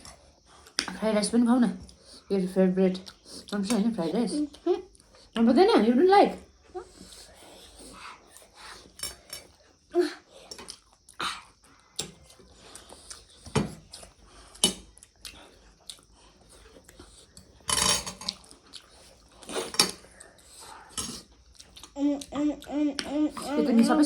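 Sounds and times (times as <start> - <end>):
utensils clinking on plates: 17.7 - 18.4.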